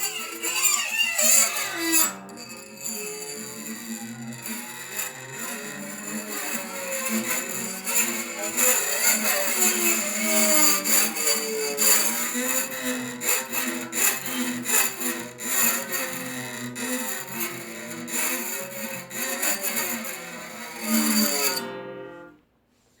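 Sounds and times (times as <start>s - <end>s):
guitar strings scraped: 0.0s - 22.4s
sliding guitar notes: 15.1s - 22.4s.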